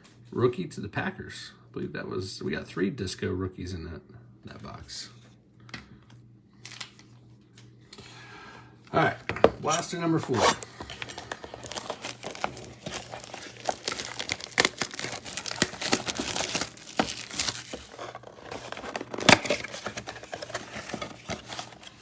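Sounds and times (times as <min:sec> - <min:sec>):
plastic wrapping crinkling and tearing: 0:06.6 - 0:07.0, 0:09.7 - 0:22.0.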